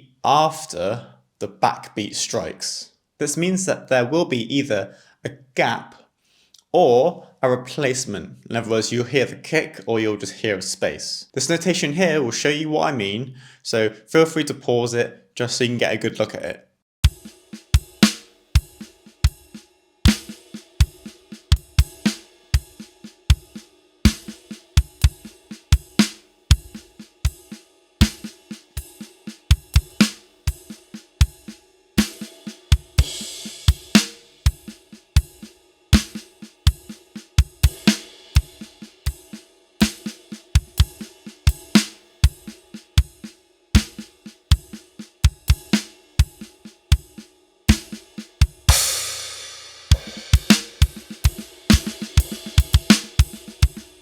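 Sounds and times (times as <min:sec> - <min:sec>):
cymbal wash ringing: 0:17.0 - 0:54.0
drum kit groove: 0:17.0 - 0:54.0.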